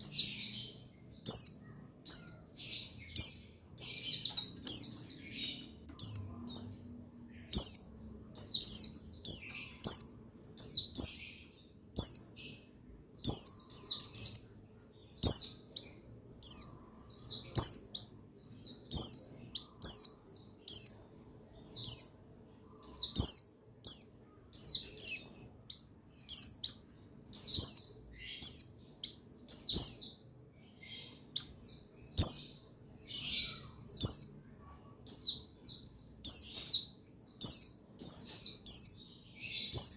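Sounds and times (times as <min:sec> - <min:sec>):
white-eye chirping: 0:00.0 - 0:11.4.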